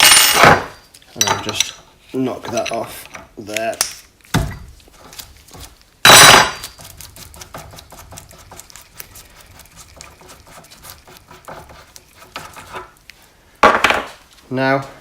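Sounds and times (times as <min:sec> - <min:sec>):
metal parts clinking: 0:02.4 - 0:03.2.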